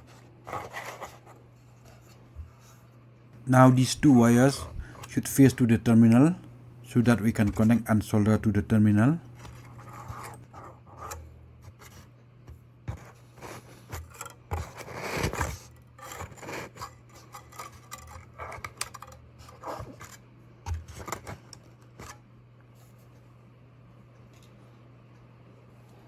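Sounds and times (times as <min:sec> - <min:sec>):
steady low hum: 0:03.4 - 0:10.7
scraping and rubbing of wires: 0:03.6 - 0:12.1, 0:12.9 - 0:22.2.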